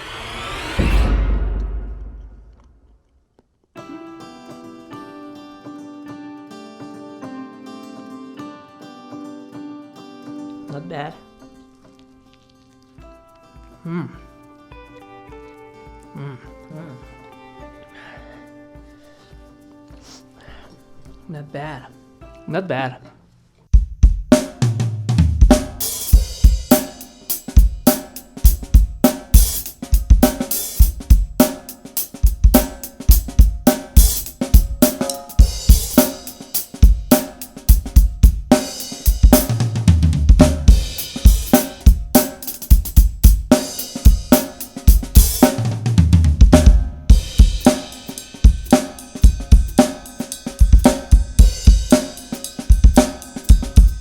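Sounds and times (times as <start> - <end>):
drum kit groove: 23.7 - 54.0.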